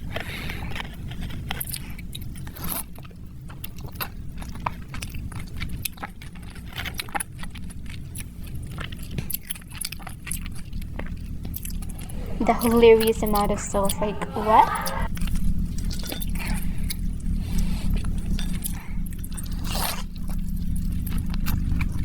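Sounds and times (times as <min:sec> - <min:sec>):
steady low hum: 0:11.6 - 0:15.1.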